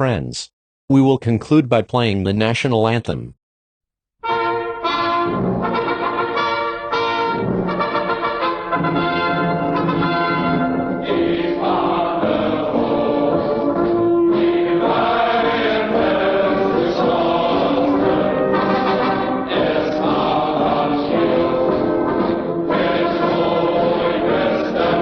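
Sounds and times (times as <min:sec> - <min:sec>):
orchestra playing: 0:04.2 - 0:11.1, 0:18.2 - 0:23.5
choir singing held notes: 0:08.8 - 0:25.0.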